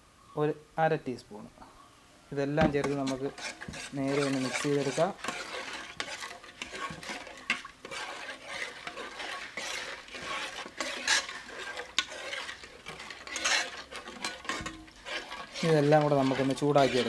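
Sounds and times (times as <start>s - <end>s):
spoon stirring and scraping vessel: 2.6s - 17.0s.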